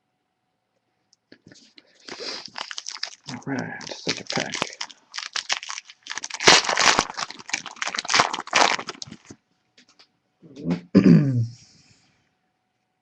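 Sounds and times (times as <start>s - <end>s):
foil wrapper tearing and crinkling: 1.8s - 9.4s.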